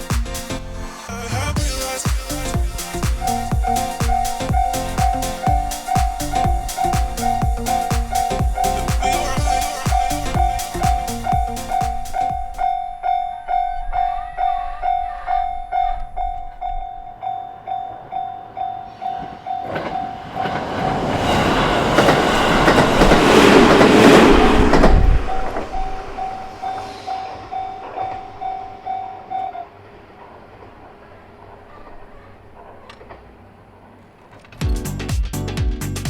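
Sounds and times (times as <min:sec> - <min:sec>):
train rumbling past: 0:00.0 - 0:34.4
level crossing alarm dinging: 0:01.6 - 0:20.5.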